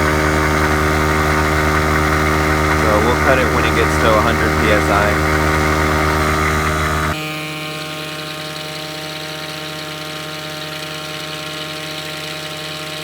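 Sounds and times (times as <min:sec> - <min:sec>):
air compressor running: 0:00.0 - 0:07.2
truck engine idling: 0:00.0 - 0:07.2.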